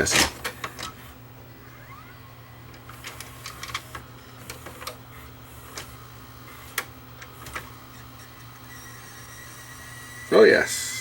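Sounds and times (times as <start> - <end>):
tape mechanism clicking: 0.0 - 1.0.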